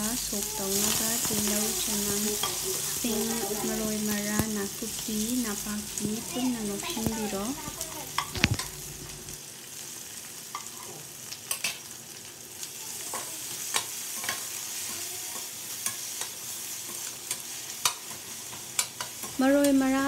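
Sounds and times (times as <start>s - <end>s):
chillies sizzling in hot oil: 0.0s - 20.0s
spatula clicking against pan: 17.2s - 19.8s.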